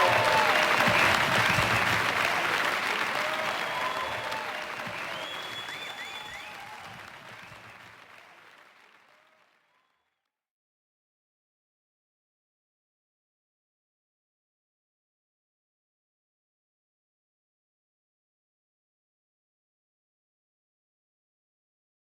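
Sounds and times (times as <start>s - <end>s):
crowd applauding: 0.0s - 10.0s
faint whistles and calls: 4.9s - 6.9s.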